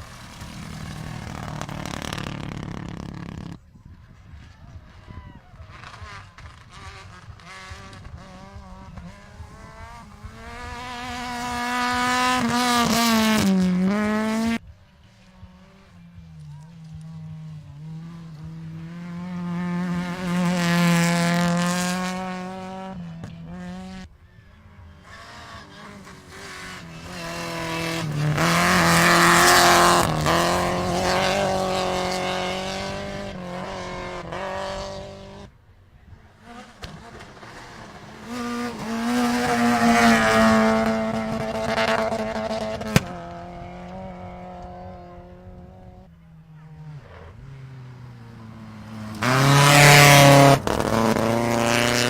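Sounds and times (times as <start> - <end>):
rally cars passing at high revs: 0.0 - 52.0.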